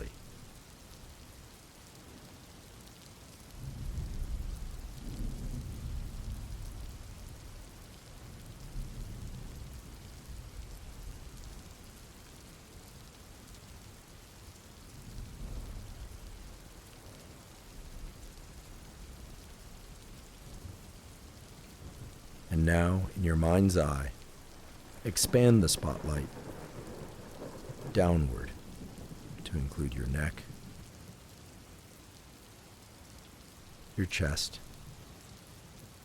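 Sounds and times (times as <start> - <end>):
steady rain: 0.0 - 36.0
rumbling thunder: 3.6 - 7.1, 23.9 - 30.9.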